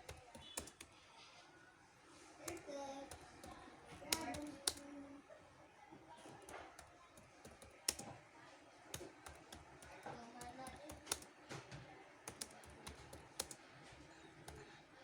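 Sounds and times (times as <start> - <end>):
computer keyboard typing: 0.0 - 1.0, 2.4 - 5.0, 6.2 - 8.2, 8.9 - 11.4, 12.2 - 14.9.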